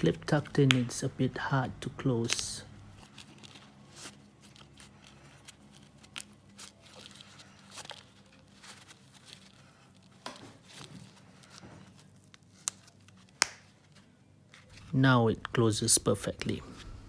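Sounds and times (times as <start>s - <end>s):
fabric pouch rustling: 2.9s - 15.0s.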